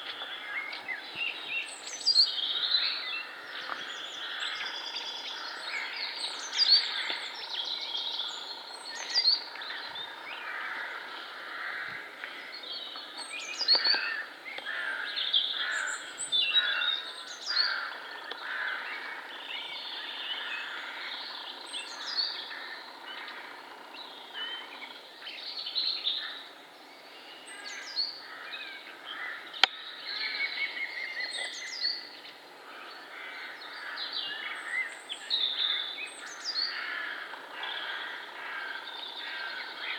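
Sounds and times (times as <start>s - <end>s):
songbirds singing: 0.0s - 39.9s.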